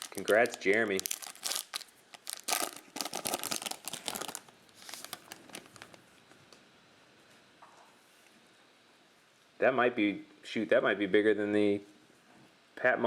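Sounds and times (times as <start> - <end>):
cards and plastic wrapping crinkling: 0.0 - 6.0.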